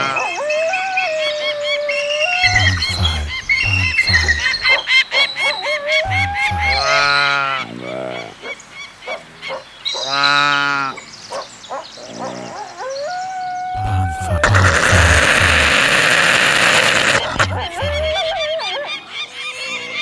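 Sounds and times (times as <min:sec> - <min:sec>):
long drawn-out animal calls: 0:14.4 - 0:17.6.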